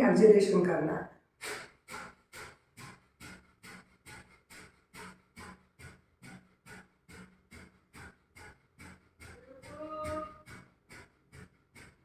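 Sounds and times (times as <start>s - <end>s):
woman's forceful breath puffs: 1.4s - 5.5s.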